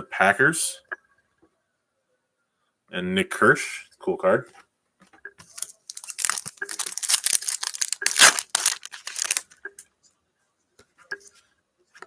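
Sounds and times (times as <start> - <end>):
foil wrapper crinkling: 5.4 - 9.6.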